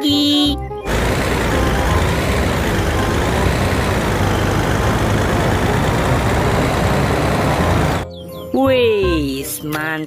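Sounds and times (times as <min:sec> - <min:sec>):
heavy truck engine rumbling: 0:00.8 - 0:08.0.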